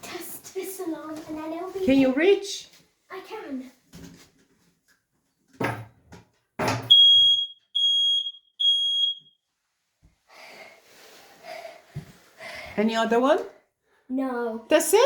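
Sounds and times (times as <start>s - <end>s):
smoke alarm beeps: 6.9s - 9.4s.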